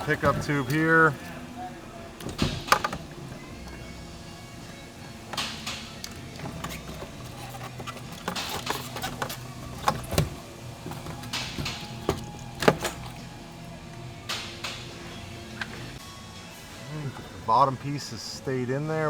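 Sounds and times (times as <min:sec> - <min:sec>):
plastic parts clicking and knocking: 0:02.2 - 0:03.9, 0:05.3 - 0:13.2.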